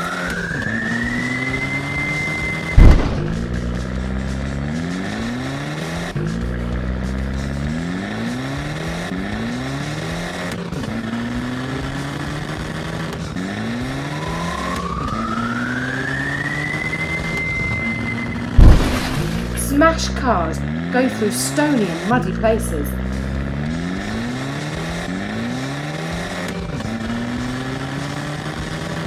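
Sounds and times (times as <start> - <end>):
cartoon monster truck engine revving: 0.0 - 29.0
loud thump: 2.7 - 3.8, 18.6 - 19.5
high rising whine: 13.8 - 21.2.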